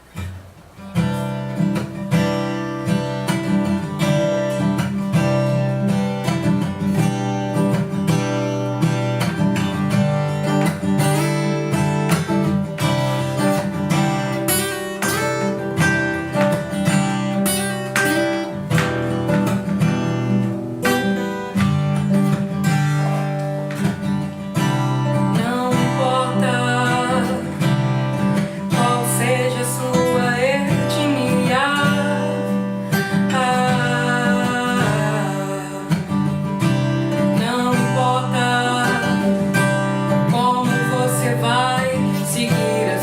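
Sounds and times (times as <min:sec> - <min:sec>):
acoustic guitar strumming: 0:00.0 - 0:43.0.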